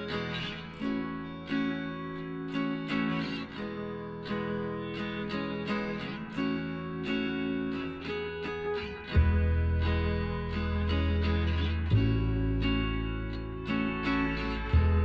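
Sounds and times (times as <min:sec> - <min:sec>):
acoustic guitar music: 0:00.0 - 0:15.0
deep bass tone: 0:09.2 - 0:15.0.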